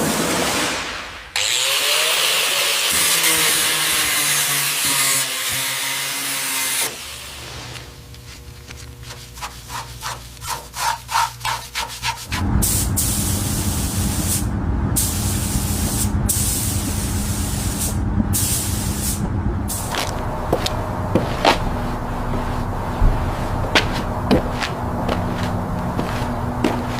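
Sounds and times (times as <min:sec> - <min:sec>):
power tool running: 0:01.4 - 0:07.4
quick rubbing strokes: 0:09.0 - 0:12.4
loud steady machine noise: 0:12.4 - 0:26.9.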